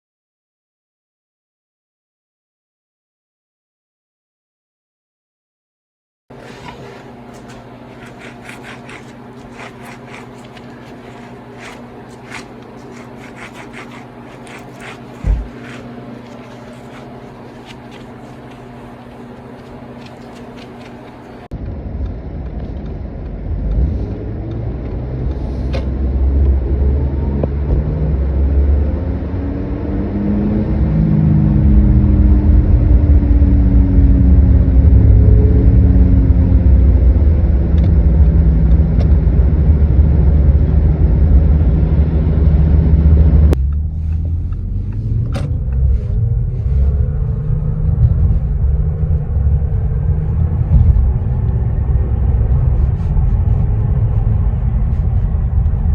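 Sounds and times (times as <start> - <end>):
wheel bearing hum: 6.3 - 21.5, 37.2 - 55.9
car driving with low rumble: 6.4 - 55.9.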